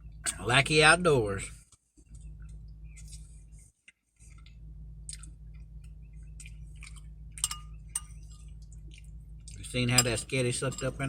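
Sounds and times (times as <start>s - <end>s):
low hum: 0.0s - 11.0s
person chewing and slurping: 4.2s - 9.6s.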